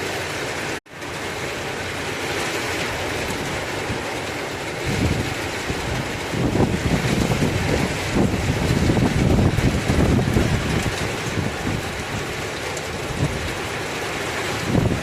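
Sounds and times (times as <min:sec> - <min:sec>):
heavy rain hiss: 0:00.0 - 0:15.0
low rumble of thunder: 0:04.7 - 0:13.6, 0:14.6 - 0:15.0.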